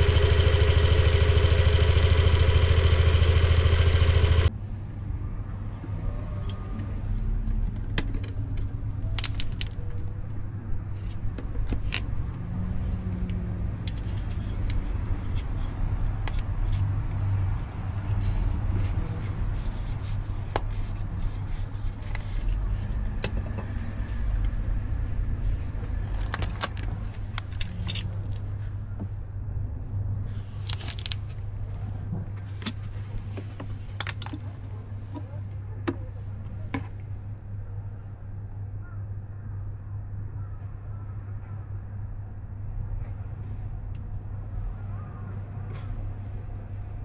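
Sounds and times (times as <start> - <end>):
steady low hum: 0.0 - 4.5.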